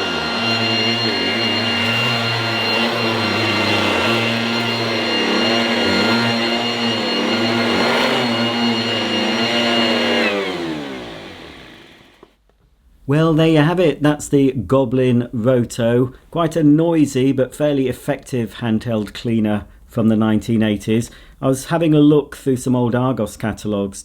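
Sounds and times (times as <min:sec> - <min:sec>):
handheld vacuum cleaner whining: 0:00.0 - 0:12.4.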